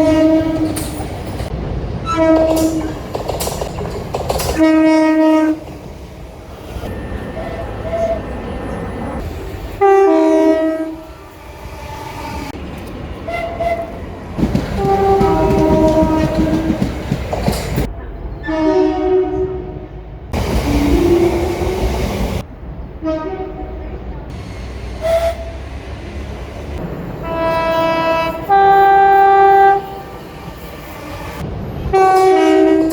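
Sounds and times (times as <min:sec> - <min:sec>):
two-note train horn: 0:00.0 - 0:00.8, 0:09.8 - 0:11.2, 0:14.8 - 0:16.8, 0:18.4 - 0:19.8, 0:24.9 - 0:25.7, 0:27.2 - 0:30.6
train rumbling on rails: 0:00.0 - 0:32.9.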